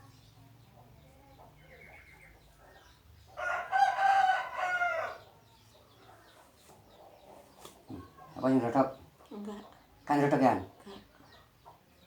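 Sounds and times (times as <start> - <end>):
rooster crowing: 3.4 - 5.3.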